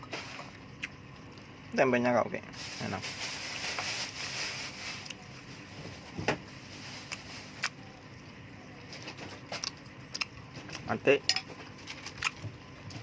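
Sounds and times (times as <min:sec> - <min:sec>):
quiet chewing: 0:09.0 - 0:10.9.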